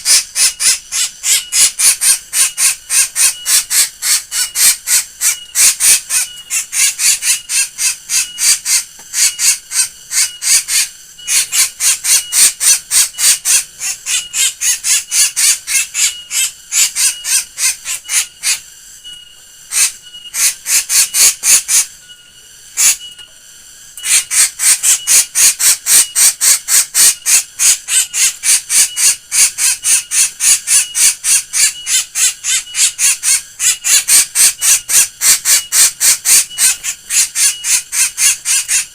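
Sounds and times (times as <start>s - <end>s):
bird calling harsh notes: 0.0s - 23.2s, 24.0s - 38.9s.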